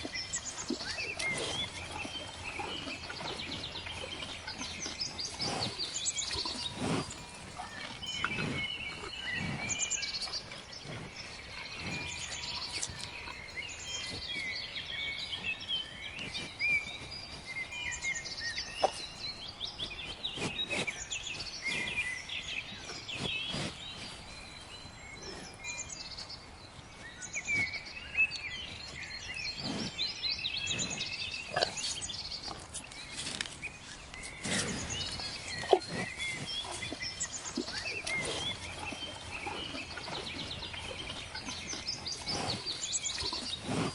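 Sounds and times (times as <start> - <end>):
small birds chirping: 0.0 - 43.9
grass rustles and snaps: 32.5 - 34.8.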